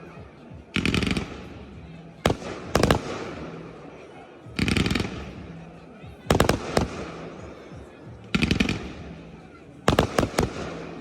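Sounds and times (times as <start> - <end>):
fireworks bursting with sharp bangs: 0.8 - 5.6, 6.2 - 7.7, 8.3 - 9.2, 9.9 - 11.0.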